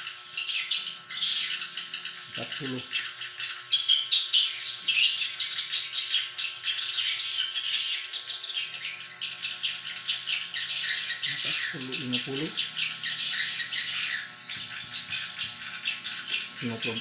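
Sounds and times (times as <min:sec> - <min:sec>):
swiftlets twittering: 0:00.0 - 0:17.0.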